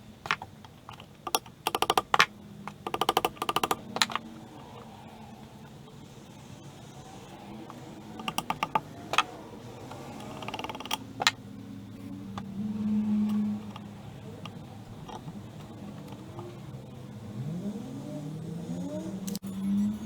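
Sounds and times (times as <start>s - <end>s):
steady hum: 0.0s - 20.0s
small mechanical clicks: 0.2s - 4.8s, 7.3s - 11.4s, 12.3s - 17.0s.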